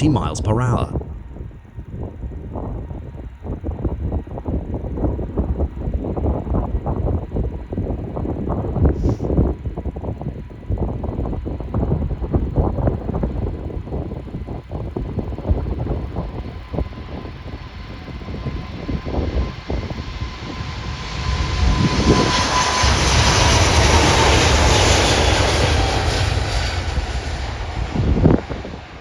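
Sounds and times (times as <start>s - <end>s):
wind buffeting microphone: 0.0s - 29.0s
jet airliner roaring: 11.5s - 29.0s.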